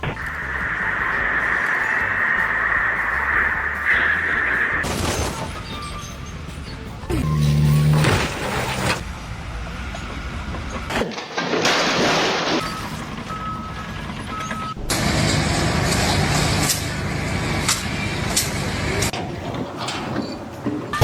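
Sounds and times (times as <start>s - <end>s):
heavy engine running: 0.0s - 11.3s, 12.2s - 21.0s
reversing alarm beeps: 12.6s - 14.8s.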